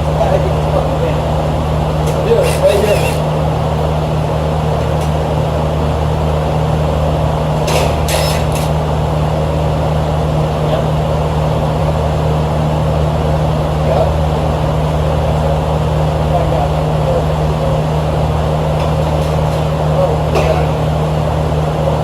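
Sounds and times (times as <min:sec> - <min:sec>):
machinery humming and rushing: 0:00.0 - 0:22.0
short scraping bursts: 0:02.1 - 0:03.3, 0:07.6 - 0:08.8.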